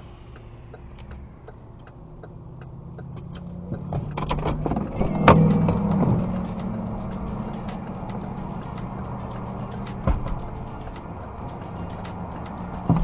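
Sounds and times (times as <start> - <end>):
light regular ticking: 0.0 - 4.0, 5.0 - 13.0
vehicle engine and road noise: 0.0 - 13.0
sharp clack: 5.0 - 13.0.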